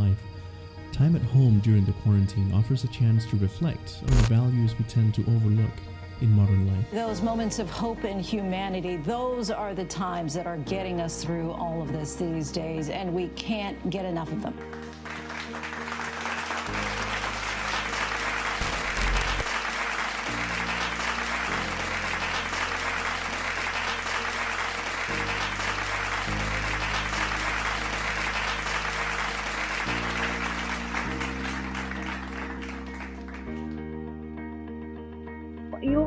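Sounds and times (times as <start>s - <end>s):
music with slow held chords: 0.0s - 36.0s
crowd applauding: 14.6s - 33.8s.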